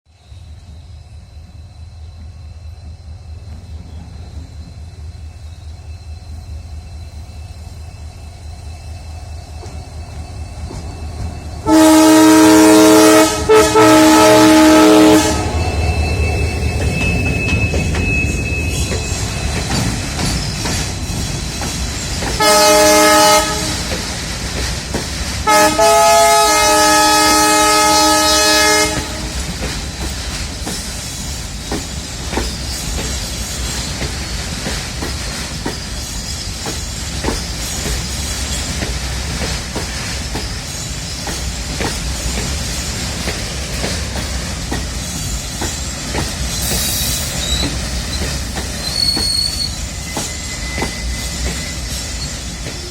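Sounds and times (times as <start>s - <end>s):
locomotive humming: 0.2s - 52.9s
multi-tone train horn: 11.6s - 15.8s, 22.2s - 24.0s, 25.4s - 29.5s
train wheels clacking over rail joints: 16.7s - 52.9s.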